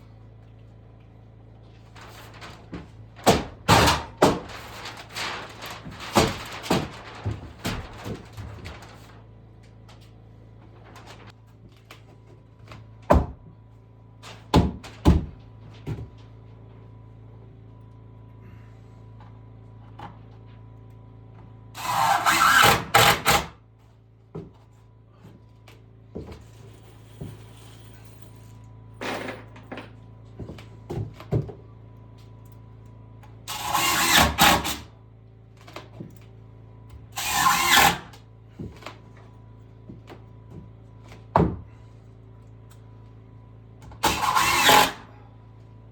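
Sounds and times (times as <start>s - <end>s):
steady low hum: 0.0s - 22.3s
power tool cutting wood: 21.8s - 23.5s, 33.5s - 34.9s, 37.1s - 38.2s, 44.0s - 45.1s
wood knocking and thunking: 41.3s - 41.7s.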